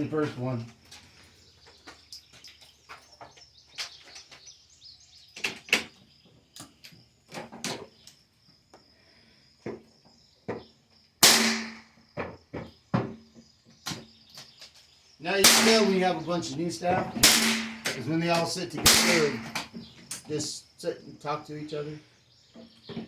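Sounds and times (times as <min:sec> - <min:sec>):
loud rifle shot: 0:11.2 - 0:11.9, 0:15.4 - 0:16.1, 0:17.2 - 0:18.0, 0:18.8 - 0:19.6
rifles being handled: 0:13.9 - 0:20.4.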